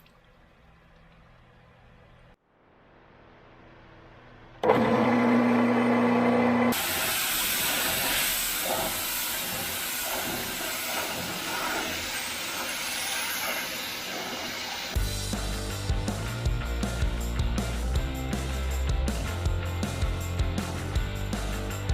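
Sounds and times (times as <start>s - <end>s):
pressure washer motor humming: 4.6s - 15.7s
high-pressure water spray hissing: 6.7s - 15.0s.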